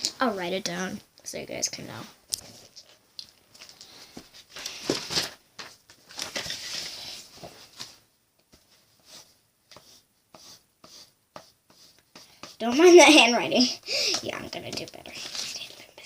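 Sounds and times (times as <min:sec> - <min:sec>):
pen scratching on paper: 0:09.1 - 0:12.9.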